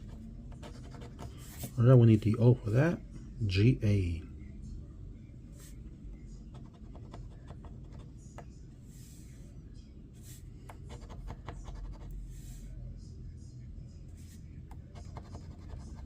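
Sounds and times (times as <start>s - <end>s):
scratching a scratch card: 10.7s - 12.2s, 14.8s - 16.0s.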